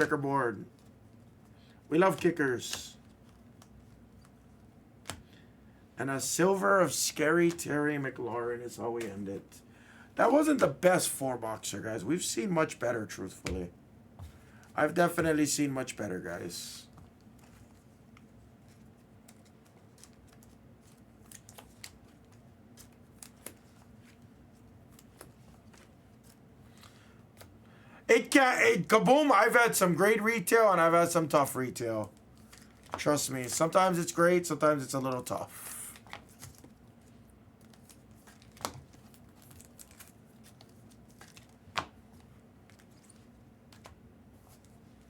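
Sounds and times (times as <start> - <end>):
low room hum: 0.0 - 45.0
trading cards clicking and rustling: 17.0 - 27.6, 31.8 - 36.8, 37.6 - 44.8.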